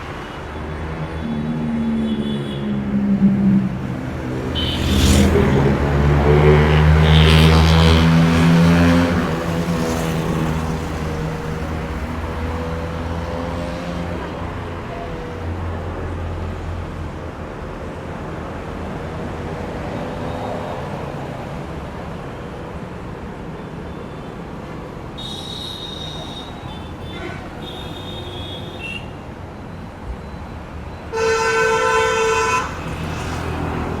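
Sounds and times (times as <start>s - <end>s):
steady traffic noise: 0.0s - 34.0s
vehicle engine passing: 3.0s - 14.2s.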